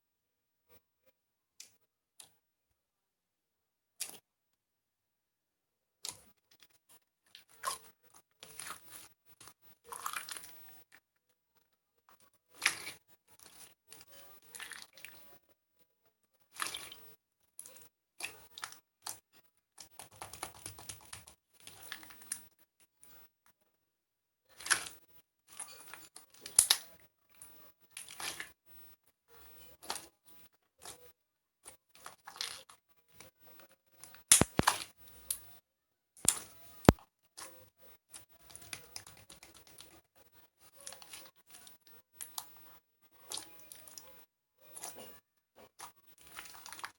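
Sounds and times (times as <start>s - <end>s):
hands squishing slime: 6.0s - 10.9s, 12.1s - 15.4s, 16.5s - 23.2s, 24.5s - 28.6s, 29.3s - 35.5s, 36.2s - 46.9s.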